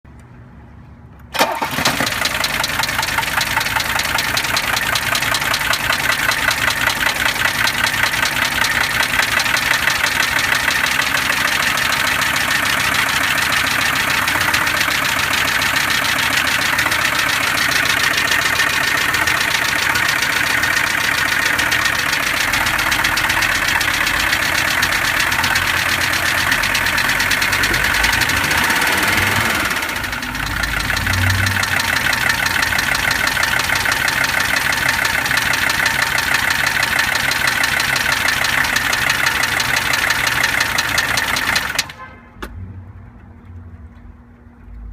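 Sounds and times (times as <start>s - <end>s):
diesel engine idling with knocking: 1.4s - 44.6s.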